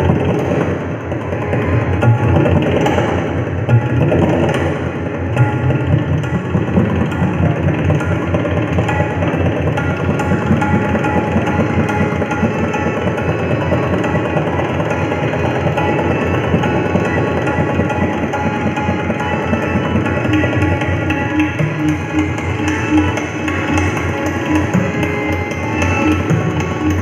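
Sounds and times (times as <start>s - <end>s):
tabla strokes: 0.0s - 27.0s
harmonium melody: 5.3s - 27.0s.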